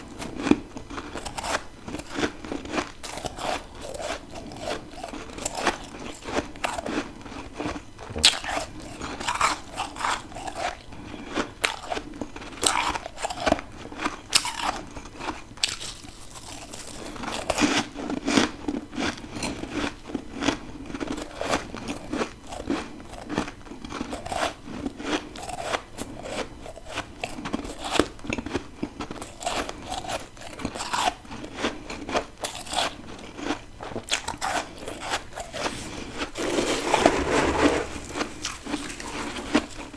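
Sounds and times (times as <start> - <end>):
chewing ice crunches: 9.8 - 17.6, 25.1 - 39.9.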